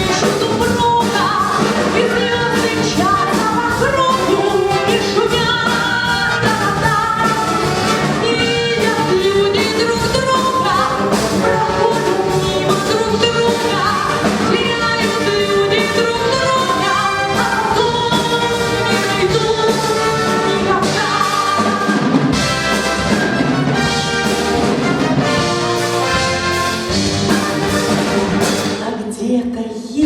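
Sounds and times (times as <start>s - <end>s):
woman singing pop song: 0.0s - 22.2s, 28.8s - 30.0s
orchestral accompaniment: 0.0s - 29.0s.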